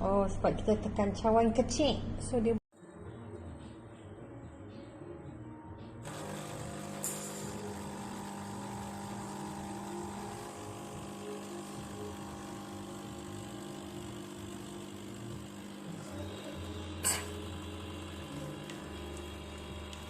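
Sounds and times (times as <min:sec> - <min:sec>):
espresso machine pump humming: 0:06.0 - 0:20.0.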